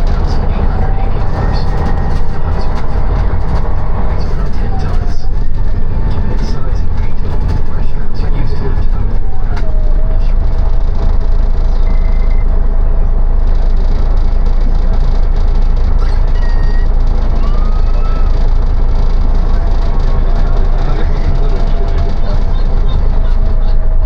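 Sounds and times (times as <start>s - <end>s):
bus engine and road rumble: 0.0s - 24.0s
thin whine: 0.0s - 24.0s
short high squeaks: 16.0s - 19.9s.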